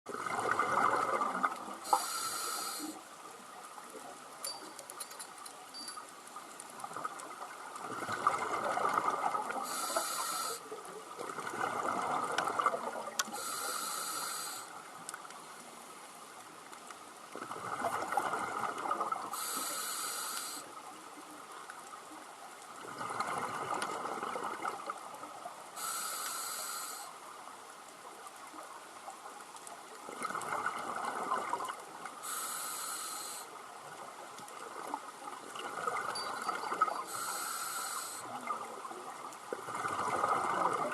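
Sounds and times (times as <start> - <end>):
rushing bubbles: 0.1 - 1.9, 6.8 - 9.8, 11.2 - 13.2, 17.4 - 19.3, 22.8 - 25.2, 30.0 - 31.8, 34.7 - 37.0, 38.4 - 40.9
diver breathing through regulator: 1.9 - 3.0, 9.6 - 10.7, 13.3 - 14.7, 19.4 - 20.7, 25.8 - 27.2, 32.2 - 33.5, 37.0 - 38.3.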